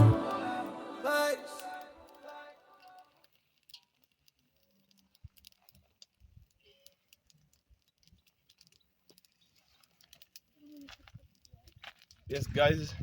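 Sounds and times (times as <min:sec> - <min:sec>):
faint clicks and light knocks: 0:02.9 - 0:12.3.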